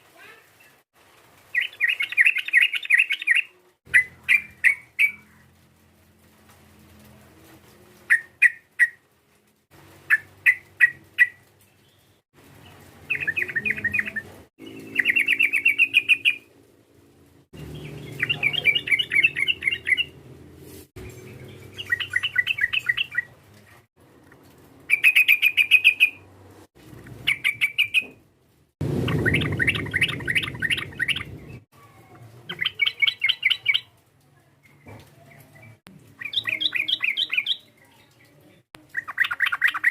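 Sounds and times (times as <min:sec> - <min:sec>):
bird chattering call: 0:17.8 - 0:20.1, 0:29.1 - 0:31.6.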